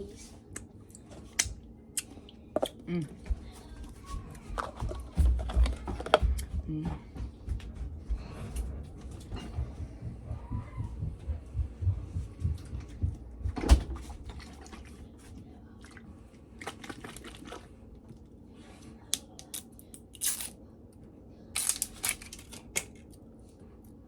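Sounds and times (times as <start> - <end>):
low bumps and knocks: 4.2 - 14.2.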